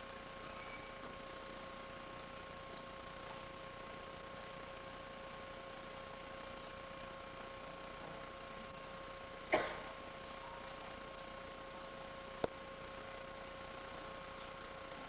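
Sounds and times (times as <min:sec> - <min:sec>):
electrical hum and hiss: 0:00.0 - 0:15.0.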